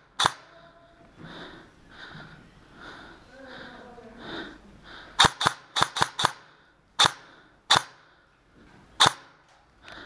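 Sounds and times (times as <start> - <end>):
airsoft gun shots: 0.2 - 0.4, 5.2 - 8.0, 9.0 - 9.4.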